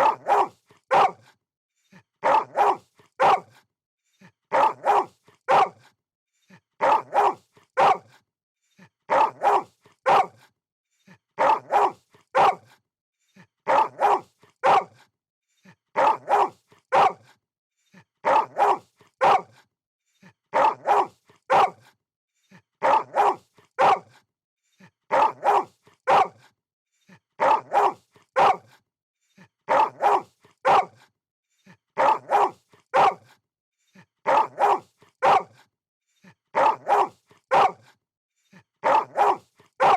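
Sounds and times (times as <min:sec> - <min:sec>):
dog barking: 0:00.0 - 0:01.3, 0:02.2 - 0:03.6, 0:04.5 - 0:05.9, 0:06.8 - 0:08.2, 0:09.1 - 0:10.5, 0:11.4 - 0:12.8, 0:13.7 - 0:15.1, 0:16.0 - 0:17.3, 0:18.2 - 0:19.6, 0:20.5 - 0:21.9, 0:22.8 - 0:24.2, 0:25.1 - 0:26.5, 0:27.4 - 0:28.8, 0:29.7 - 0:31.1, 0:32.0 - 0:33.4, 0:34.2 - 0:35.7, 0:36.5 - 0:38.0, 0:38.8 - 0:39.9.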